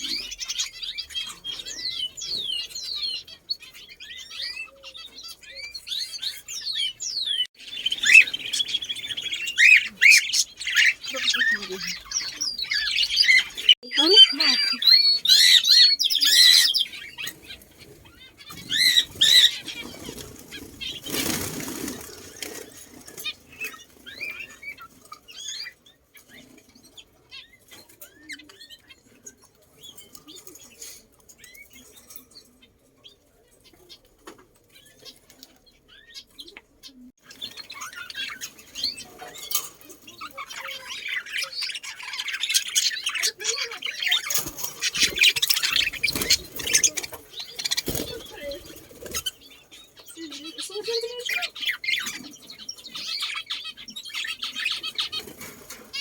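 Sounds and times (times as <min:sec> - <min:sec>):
squawky bird calls: 0:00.0 - 0:26.6, 0:35.9 - 0:56.0
birds chirping: 0:00.0 - 0:56.0
wings flapping flutter: 0:18.7 - 0:23.4, 0:44.3 - 0:49.4.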